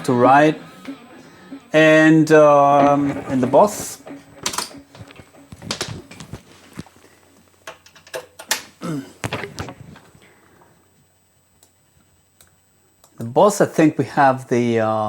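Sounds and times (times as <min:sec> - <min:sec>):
controls clicking and knocking: 0:04.4 - 0:06.4.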